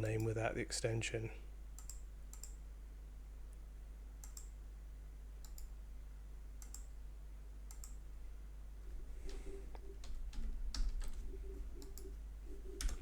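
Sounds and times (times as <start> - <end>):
low electrical hum: 0.0 - 13.0
computer clicks: 1.8 - 2.6, 4.2 - 4.6, 5.4 - 5.8, 6.6 - 7.0, 7.7 - 8.0, 9.2 - 13.0.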